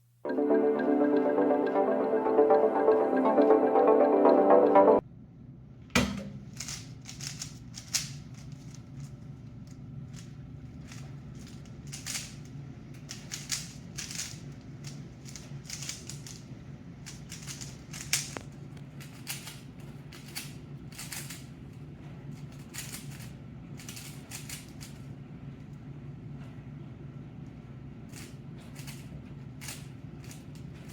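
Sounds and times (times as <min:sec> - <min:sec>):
steady low hum: 0:00.0 - 0:30.9
speed cube clicking and rattling: 0:06.5 - 0:25.2, 0:28.1 - 0:30.9.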